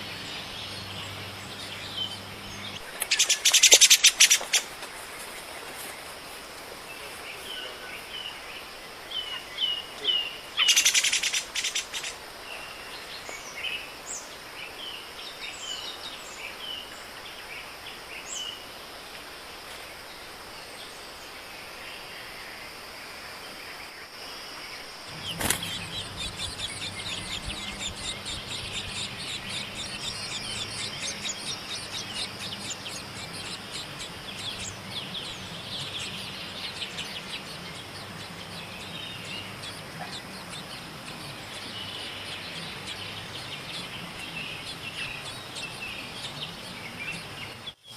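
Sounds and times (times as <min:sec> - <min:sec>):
small birds chirping: 0:00.0 - 0:06.0, 0:06.8 - 0:18.6, 0:24.7 - 0:47.9
low hum: 0:25.0 - 0:47.6
rapid continuous chattering: 0:25.1 - 0:47.4.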